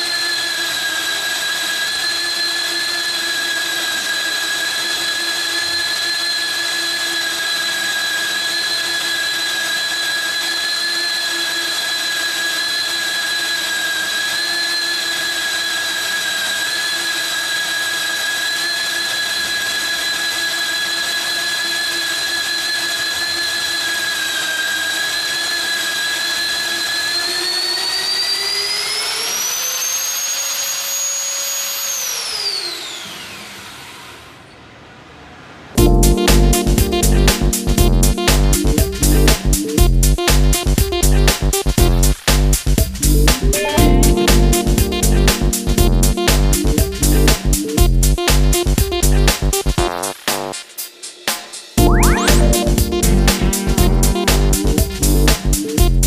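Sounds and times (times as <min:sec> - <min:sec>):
drill motor whining: 0:00.0 - 0:34.5.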